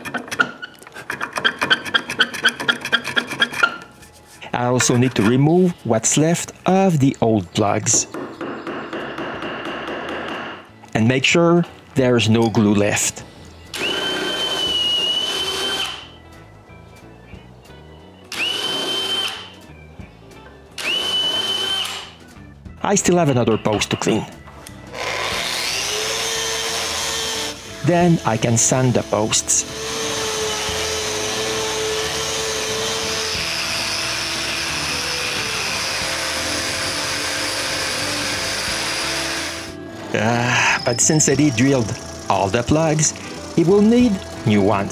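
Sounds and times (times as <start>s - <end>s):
light background music: 0.0s - 44.9s
high-speed power tool whine: 13.8s - 16.1s, 18.3s - 19.5s, 20.8s - 22.1s, 25.0s - 39.8s, 40.8s - 44.1s
electric sander sanding wood: 25.3s - 39.8s, 41.3s - 44.9s.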